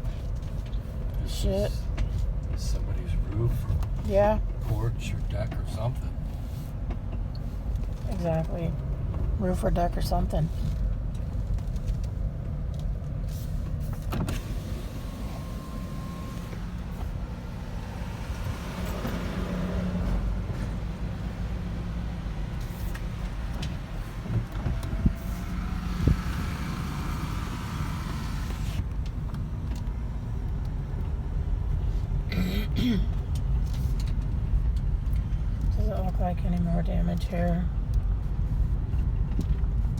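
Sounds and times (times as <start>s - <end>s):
engine and tyres rumbling: 0.0s - 39.9s.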